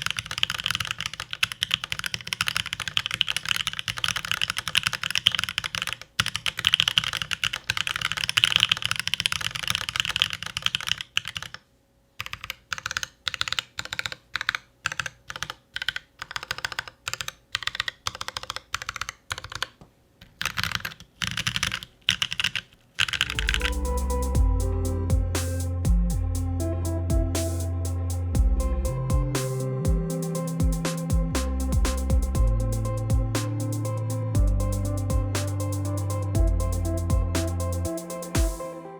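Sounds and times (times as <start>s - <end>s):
typing on mechanical keyboard: 0.0s - 11.6s, 12.2s - 23.7s
electronic music with heavy bass: 23.2s - 38.9s.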